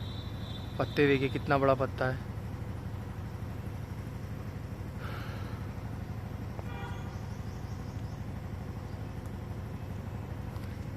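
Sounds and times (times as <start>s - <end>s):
vehicle horn toot: 0.0s - 1.7s, 6.6s - 7.3s
steady low rumble: 0.0s - 10.9s.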